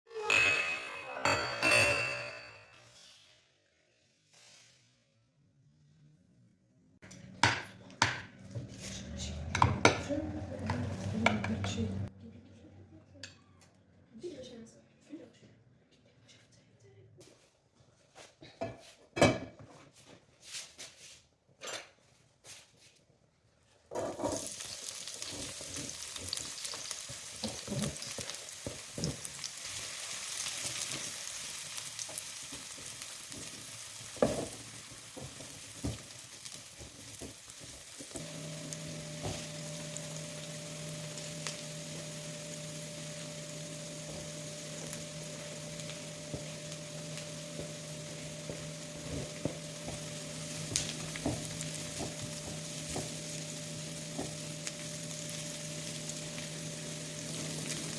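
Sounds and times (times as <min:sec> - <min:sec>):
food sizzling in a frying pan: 0:23.9 - 0:57.9.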